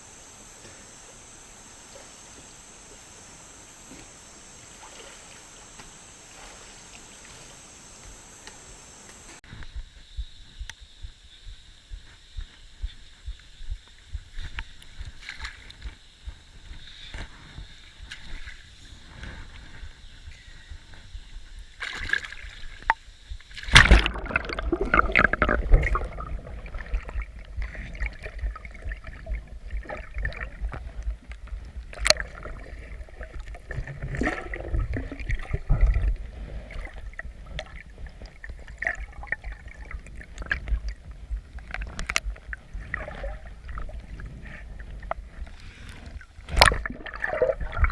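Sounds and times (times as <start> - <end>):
river water sloshing and splashing: 4.0 - 7.6, 21.8 - 23.0, 23.6 - 47.9
loud splash: 23.7 - 27.0.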